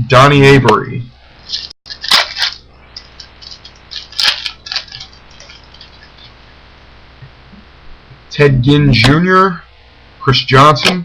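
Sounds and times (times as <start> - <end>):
foil wrapper crinkling: 1.4 - 6.3.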